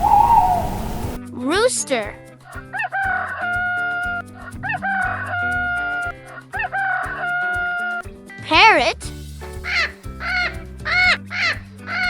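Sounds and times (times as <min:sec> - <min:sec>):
rooster crowing: 0:00.0 - 0:01.2
cheerful background music: 0:01.2 - 0:12.0.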